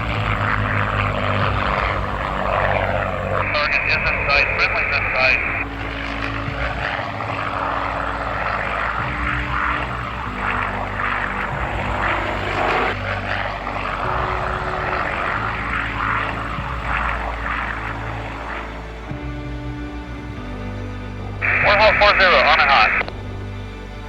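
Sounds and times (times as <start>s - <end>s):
propeller aircraft engine drone: 0.0s - 24.0s.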